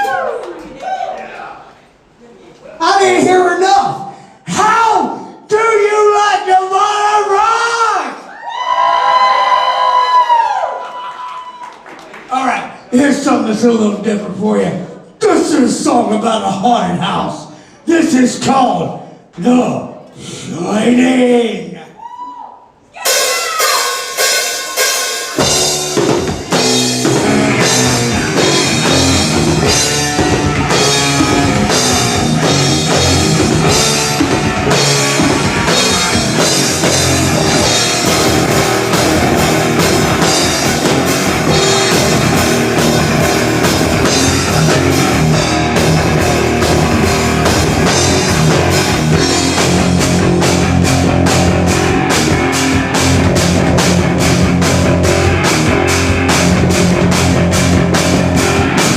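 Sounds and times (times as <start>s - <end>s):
rock band playing: 23.0s - 58.9s
drum hits: 23.1s - 58.9s.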